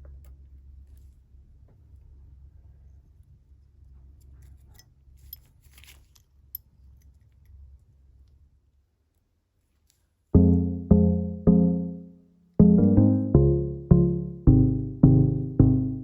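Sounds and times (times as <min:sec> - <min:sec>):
low steady hum: 0:10.4 - 0:16.0.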